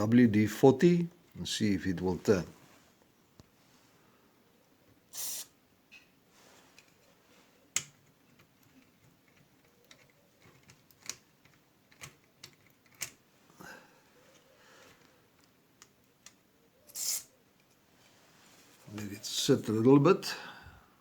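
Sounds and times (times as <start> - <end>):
aerosol spray: 5.1 - 5.6
small handling clicks and taps: 7.7 - 13.2.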